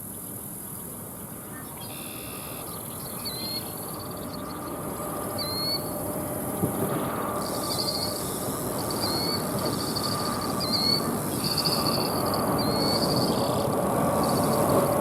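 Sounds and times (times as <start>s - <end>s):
songbird chirping and trilling: 0.0s - 6.7s, 7.4s - 14.9s
low rushing background noise: 0.0s - 15.0s.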